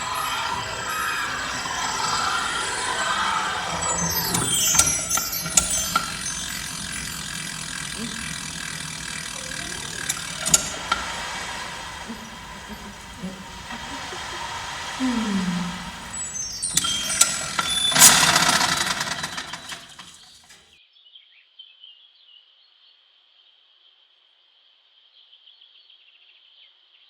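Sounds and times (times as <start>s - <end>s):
falling high-pitched sweeps: 0.0s - 20.3s
ratchet mechanical clicking: 0.0s - 20.6s.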